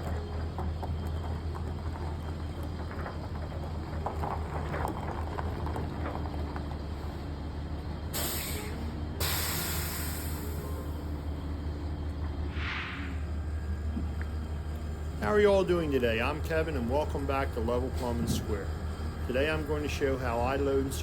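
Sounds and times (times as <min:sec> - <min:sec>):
diesel engine idling: 0:00.0 - 0:21.0
air brake hissing: 0:08.2 - 0:10.9, 0:12.5 - 0:13.4.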